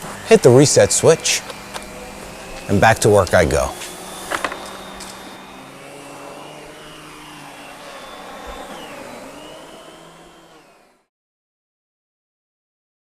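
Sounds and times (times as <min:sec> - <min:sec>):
vacuum cleaner running: 0:00.0 - 0:11.1.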